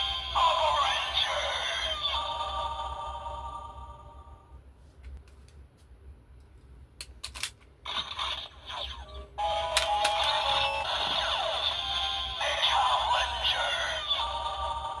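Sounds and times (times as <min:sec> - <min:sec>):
electronic toy jingle: 0:00.0 - 0:03.1, 0:08.9 - 0:14.9.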